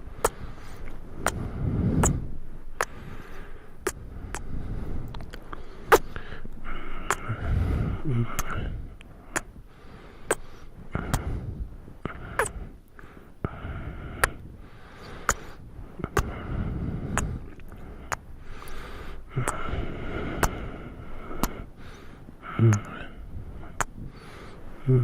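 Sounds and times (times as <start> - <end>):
breathing: 0.0 - 25.0
lip smacks kissing: 0.2 - 0.4, 5.1 - 6.2, 7.1 - 7.3, 8.4 - 8.6, 10.3 - 10.5, 12.4 - 12.6, 15.2 - 16.3, 19.4 - 19.6, 20.4 - 20.6, 22.7 - 23.0, 23.8 - 24.0.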